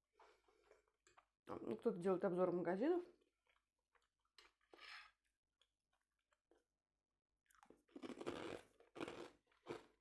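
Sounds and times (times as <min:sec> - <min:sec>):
food crunching and chewing: 0:07.4 - 0:10.0.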